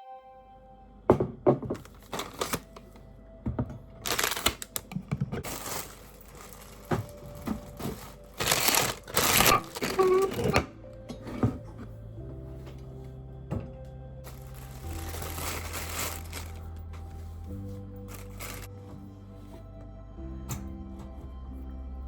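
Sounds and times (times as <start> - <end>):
faint background music: 0.0 - 22.0
loud rustling: 1.8 - 3.0, 4.0 - 10.7, 14.2 - 18.7.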